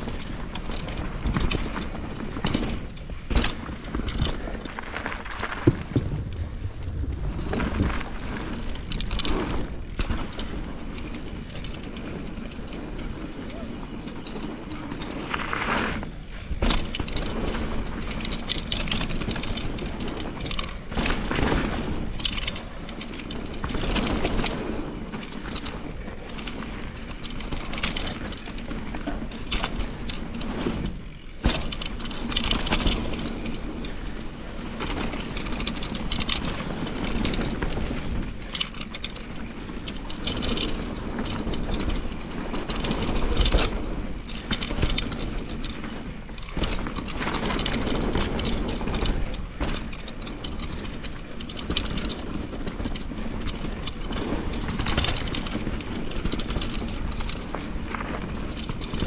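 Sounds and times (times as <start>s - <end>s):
bike rattles and knocks: 0.0s - 59.0s
bike tyre rushing on trail: 0.0s - 59.0s.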